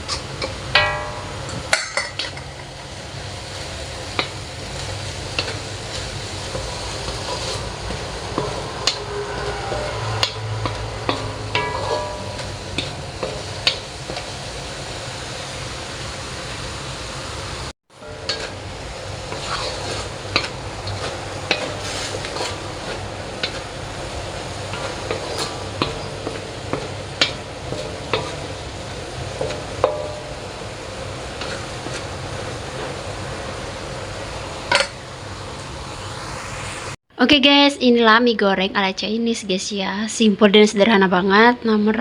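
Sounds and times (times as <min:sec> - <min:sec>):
noodles sizzling in a pan: 0:00.0 - 0:37.0
utensil scraping a pan: 0:04.2 - 0:14.4, 0:18.0 - 0:33.0.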